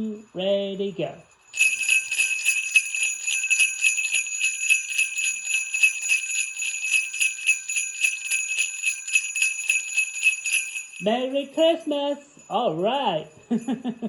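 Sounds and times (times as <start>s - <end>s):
sleigh bells jingling: 1.1s - 14.0s.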